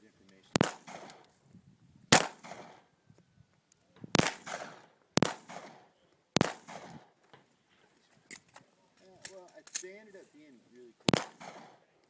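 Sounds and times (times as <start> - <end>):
gunshots with echo: 0.6 - 1.2, 2.1 - 2.8, 4.2 - 7.1, 11.1 - 11.9.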